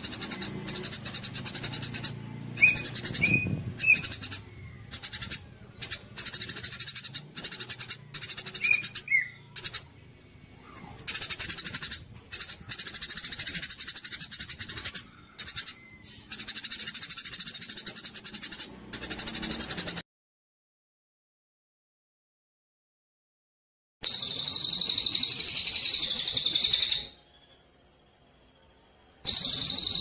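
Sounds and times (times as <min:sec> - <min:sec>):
low whistled bird notes: 0:00.0 - 0:09.9, 0:24.0 - 0:30.0
sparrow rapid chirping song: 0:00.0 - 0:20.0, 0:24.0 - 0:30.0.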